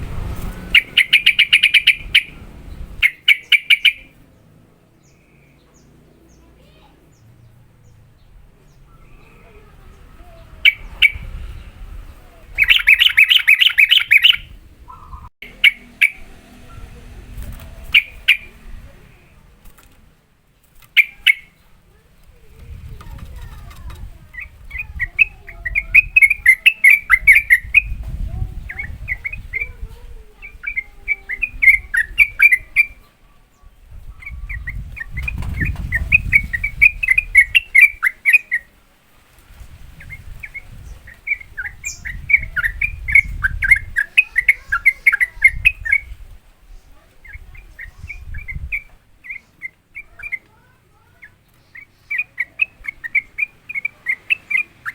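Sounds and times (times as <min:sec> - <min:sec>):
low rumble: 0:00.0 - 0:03.0, 0:07.1 - 0:12.7
bulbul singing rolling chirps: 0:00.0 - 0:17.0, 0:20.9 - 0:22.0, 0:24.3 - 0:38.8, 0:39.9 - 0:54.9.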